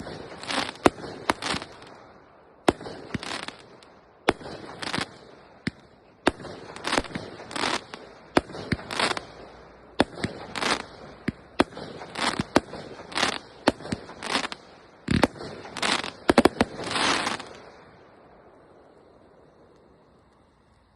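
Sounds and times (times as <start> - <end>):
fireworks bangs: 0.0 - 18.5
fireworks crackling: 0.0 - 20.9.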